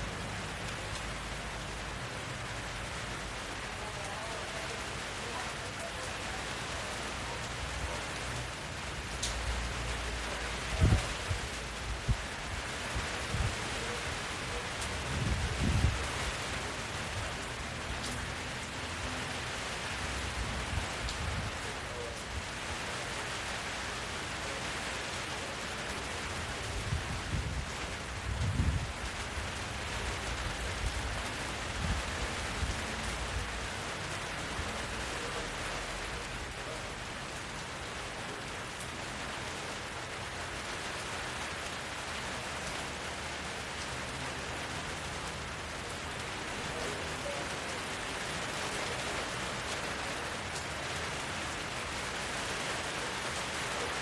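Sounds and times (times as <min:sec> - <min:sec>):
rain falling: 0:00.0 - 0:54.0.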